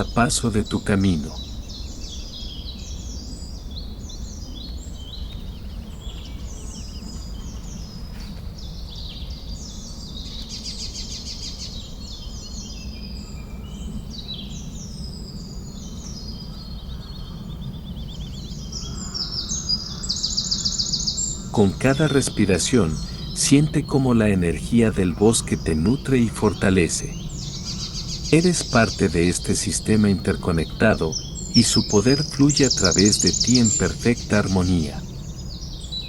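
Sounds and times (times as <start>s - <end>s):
birds chirping and trilling: 0.0s - 36.0s
low background rumble: 11.8s - 36.0s.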